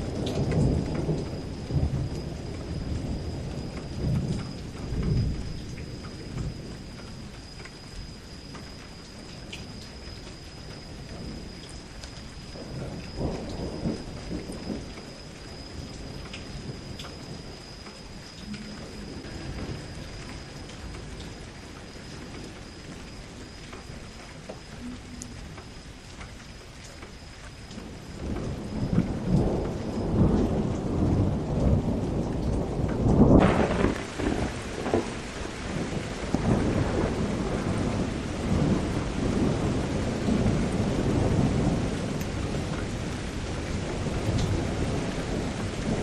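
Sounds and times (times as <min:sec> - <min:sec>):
rain falling: 0:00.0 - 0:46.0
rolling thunder rumbles: 0:00.0 - 0:46.0.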